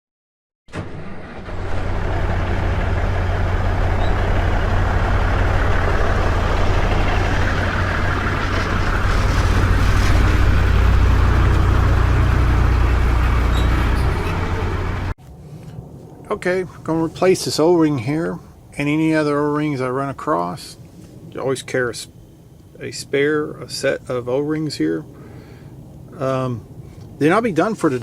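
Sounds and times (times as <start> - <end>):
engine running with deep hum: 0.8 - 15.2.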